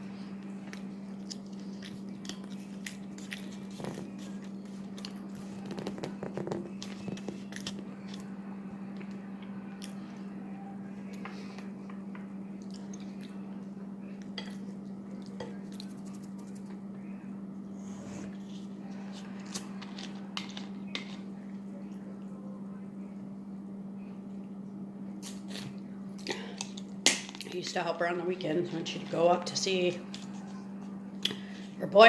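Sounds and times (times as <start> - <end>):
steady low hum: 0.0 - 32.0
person chewing: 0.6 - 8.3.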